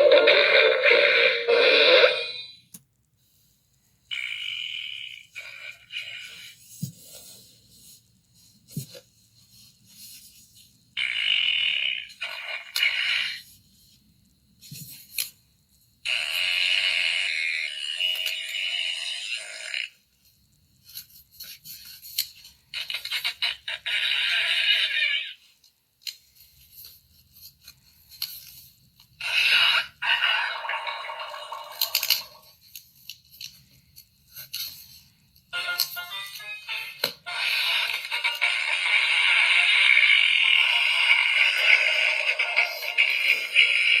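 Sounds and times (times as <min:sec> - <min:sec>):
comic fart sound effects: 0:00.0 - 0:02.3
small clicks and scrapes: 0:31.9 - 0:35.9.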